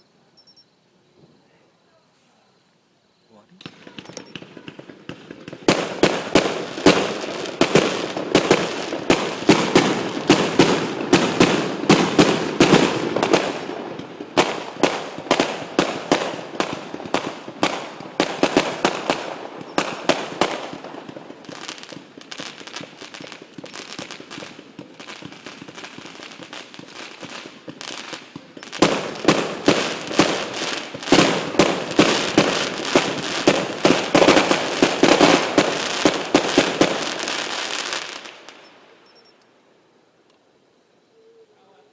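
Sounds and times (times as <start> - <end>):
fireworks bursting: 3.5 - 40.5.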